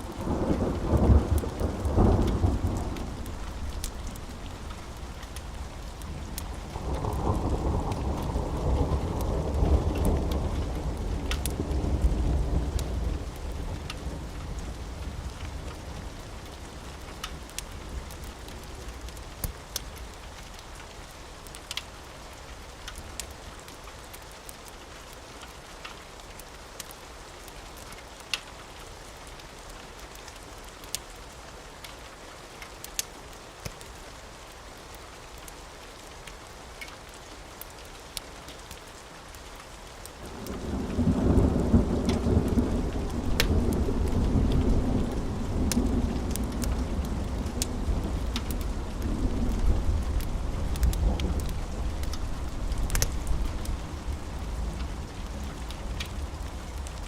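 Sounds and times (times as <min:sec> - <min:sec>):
thunder rumbling: 0:00.0 - 0:15.3, 0:40.2 - 0:57.0
steady rain: 0:00.0 - 0:57.0
sharp crackles: 0:39.5 - 0:57.0.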